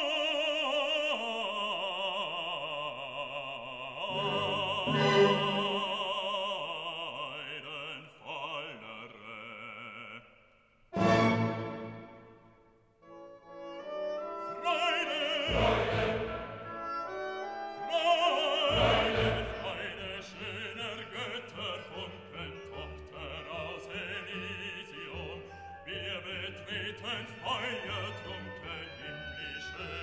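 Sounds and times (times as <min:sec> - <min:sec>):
operatic voice singing: 0:00.0 - 0:10.4, 0:14.3 - 0:30.0
orchestral accompaniment: 0:04.1 - 0:06.3, 0:11.0 - 0:30.0.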